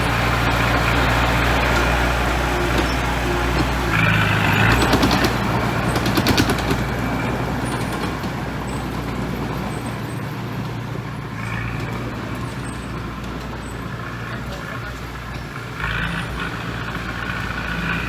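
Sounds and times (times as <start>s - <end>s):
rapid clatter: 0.0s - 10.3s
heavy diesel machine running: 0.0s - 18.0s.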